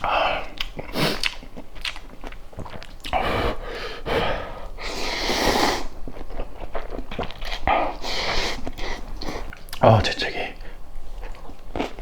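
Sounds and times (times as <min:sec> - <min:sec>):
noisy breathy intakes of breath: 0:03.1 - 0:06.0, 0:07.8 - 0:09.5.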